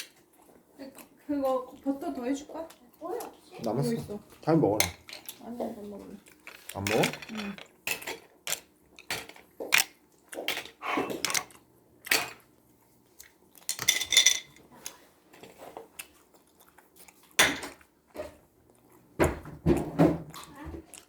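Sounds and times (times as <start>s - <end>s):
utensils clinking on dishes: 4.8s - 5.5s, 6.2s - 11.5s, 13.6s - 14.6s.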